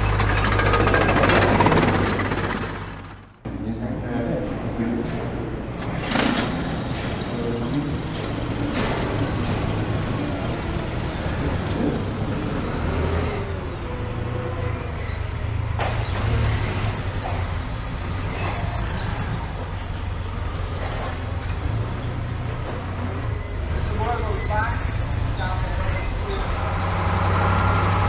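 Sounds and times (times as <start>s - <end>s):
heavy vehicle engine rumbling: 0.0s - 28.0s
sharp clicks and knocks: 4.4s - 12.8s.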